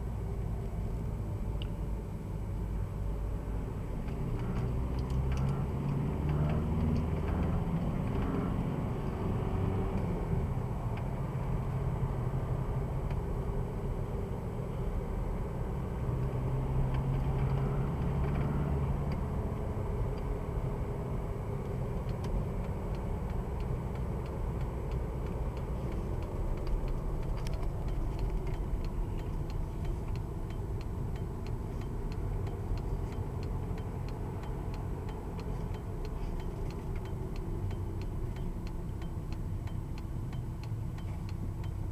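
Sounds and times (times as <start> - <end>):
diesel car engine running: 0.0 - 41.9
road rumble: 0.0 - 41.9
short repeated ticks: 21.7 - 41.9.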